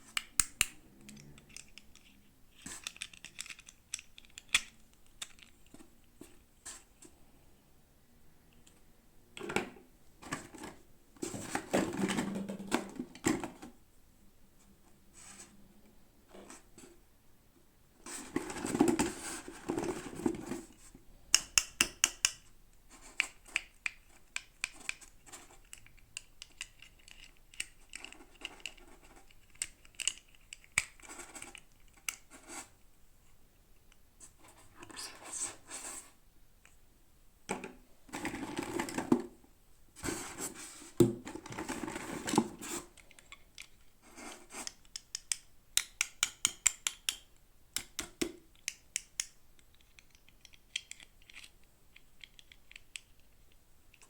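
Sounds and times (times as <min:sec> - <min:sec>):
packaging rustling and scraping: 0:18.0 - 0:20.8, 0:38.1 - 0:39.4, 0:40.0 - 0:43.0.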